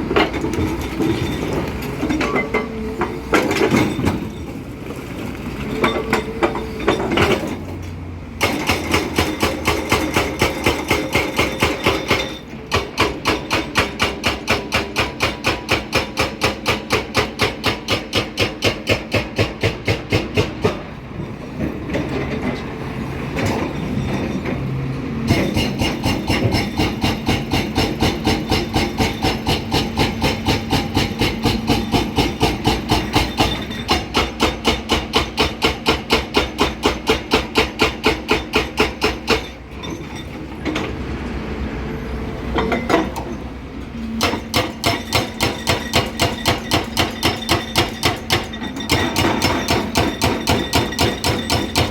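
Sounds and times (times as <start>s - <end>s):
hydraulic breaker hammering rock: 8.4s - 20.9s, 25.3s - 40.0s, 44.2s - 51.9s.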